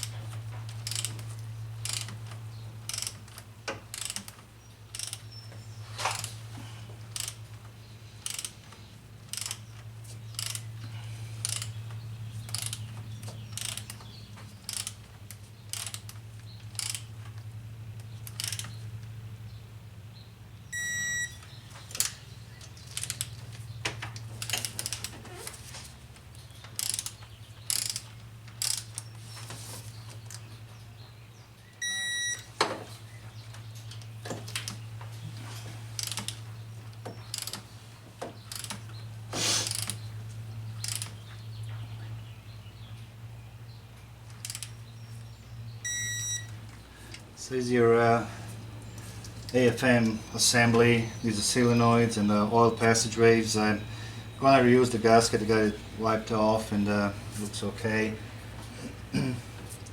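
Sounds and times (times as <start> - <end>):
steady low hum: 0.0 - 59.9
ratchet and socket clicking: 0.7 - 2.3, 2.9 - 5.3, 7.1 - 7.4, 8.2 - 8.6, 9.2 - 10.7, 11.4 - 11.8, 12.4 - 12.8, 13.5 - 17.2, 18.0 - 18.8, 21.9 - 23.4, 24.2 - 25.2, 26.6 - 29.1, 36.0 - 36.4, 37.2 - 37.6, 38.5 - 38.9, 39.6 - 40.0, 40.8 - 41.2, 44.3 - 44.8
short electronic beeps: 20.7 - 21.4, 31.8 - 32.5, 45.8 - 46.5.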